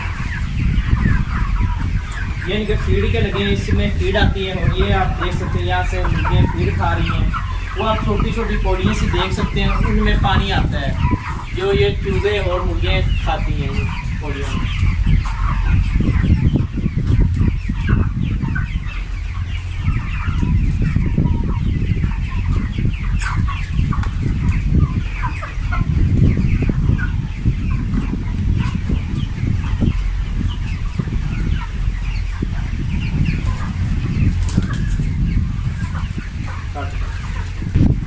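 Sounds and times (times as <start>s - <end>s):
chickens clucking and cheeping: 0.0s - 38.0s
steady low rumble: 6.8s - 38.0s.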